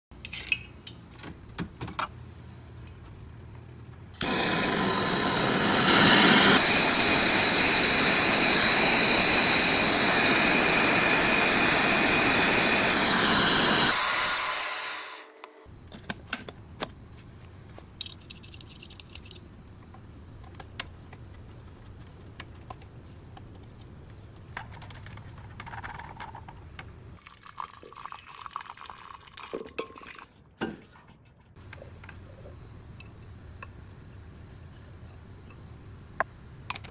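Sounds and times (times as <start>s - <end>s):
pressurised liquid rushing hiss: 4.2s - 15.5s.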